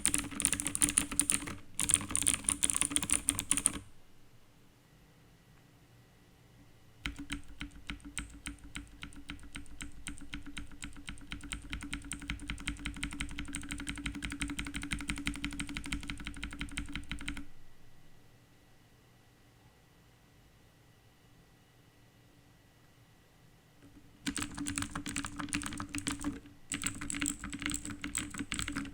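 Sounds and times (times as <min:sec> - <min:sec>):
rapid mechanical keyboard typing: 0:00.0 - 0:03.9, 0:07.0 - 0:17.5, 0:23.8 - 0:28.9.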